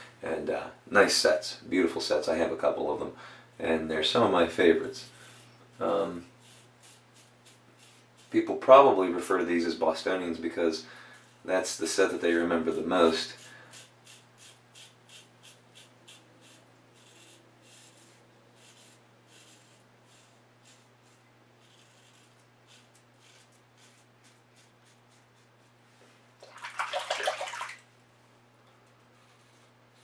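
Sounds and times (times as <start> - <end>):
razor scraping stubble: 4.2 - 8.7, 12.2 - 25.5
running water gush: 26.4 - 27.8.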